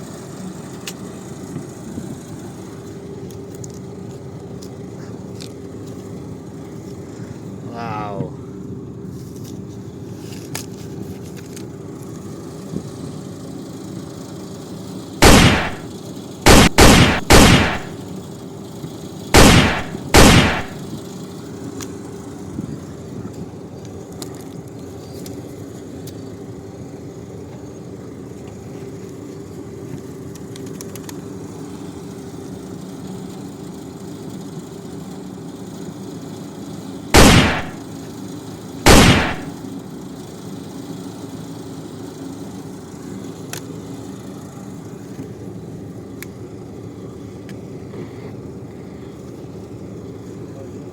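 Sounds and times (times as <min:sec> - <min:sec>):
toy gun shots: 0:15.2 - 0:15.9, 0:16.5 - 0:18.0, 0:19.4 - 0:20.9, 0:37.2 - 0:37.9, 0:38.9 - 0:39.6.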